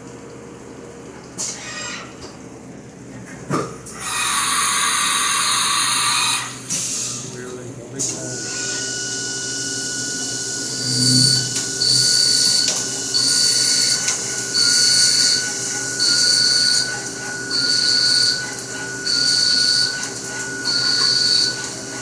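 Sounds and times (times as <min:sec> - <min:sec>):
cutting squeal and hiss: 0:04.0 - 0:07.4, 0:08.1 - 0:22.0
milling machine spindle whine: 0:04.0 - 0:22.0.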